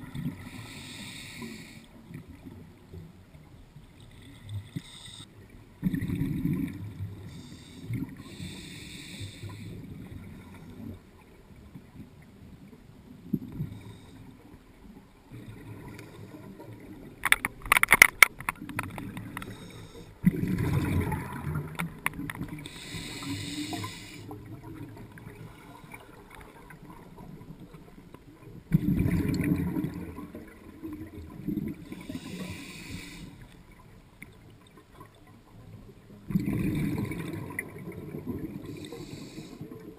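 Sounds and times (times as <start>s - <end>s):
diver breathing through regulator: 0.4s - 1.9s, 7.2s - 9.9s, 19.3s - 20.2s, 22.6s - 24.4s, 31.9s - 33.6s, 38.6s - 39.8s
exhale bubbles underwater: 4.1s - 17.2s, 18.5s - 39.9s.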